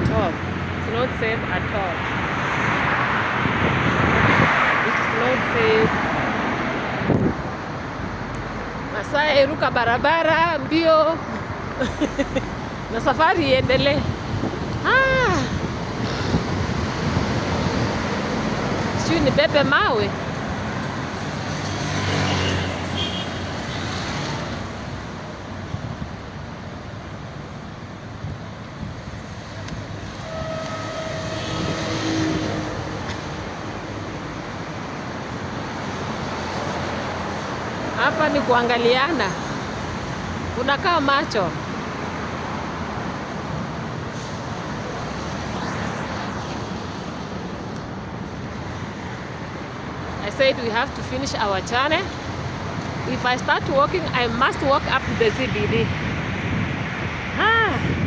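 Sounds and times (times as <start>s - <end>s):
vehicle passing: 0.0s - 26.1s, 29.2s - 58.0s
steady traffic noise: 0.0s - 58.0s
vehicle engine passing: 30.3s - 34.3s.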